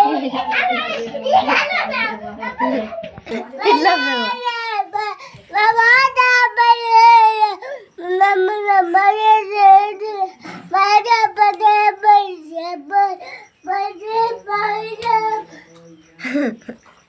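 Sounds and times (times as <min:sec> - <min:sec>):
young child singing: 0:03.3 - 0:15.6.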